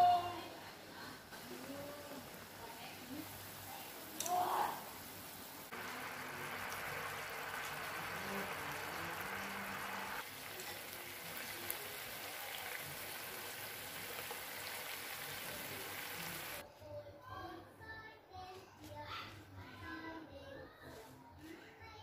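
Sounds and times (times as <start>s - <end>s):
chicken sizzling in a pan: 0.0s - 16.6s.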